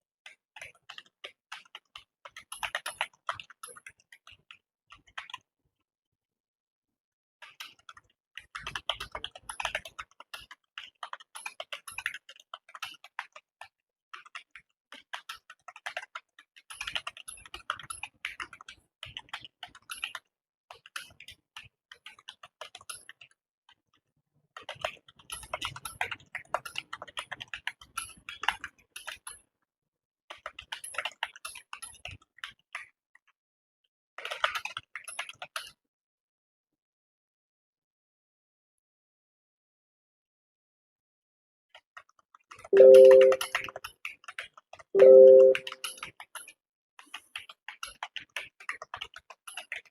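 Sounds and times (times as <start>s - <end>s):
fast keyboard typing: 42.8s - 43.8s.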